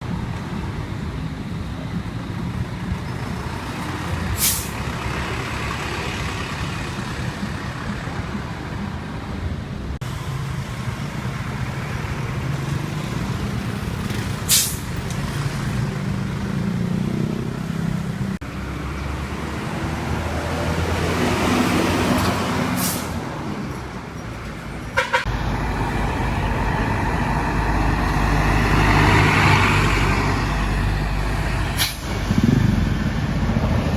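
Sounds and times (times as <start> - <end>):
bus diesel engine running: 0.0 - 33.9
air brake hiss: 4.4 - 4.8, 14.5 - 15.0, 22.7 - 23.2.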